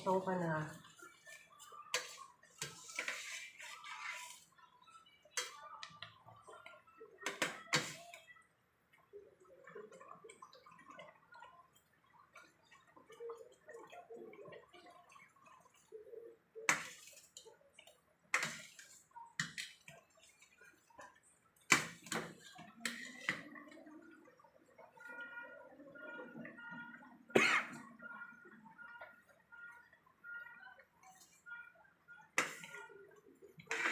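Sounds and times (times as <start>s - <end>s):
sauce bubbling in a pan: 8.5s - 33.9s.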